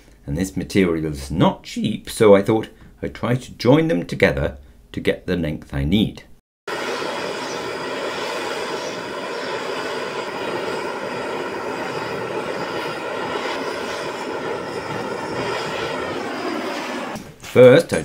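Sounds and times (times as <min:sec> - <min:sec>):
motor whirring with rushing air: 0:06.7 - 0:17.3.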